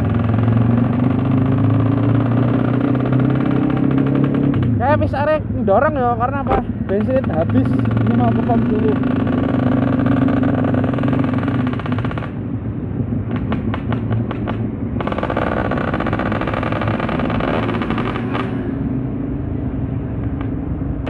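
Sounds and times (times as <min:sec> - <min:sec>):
motorcycle engine running: 0:00.0 - 0:18.7
sharp ticks: 0:06.9 - 0:09.6.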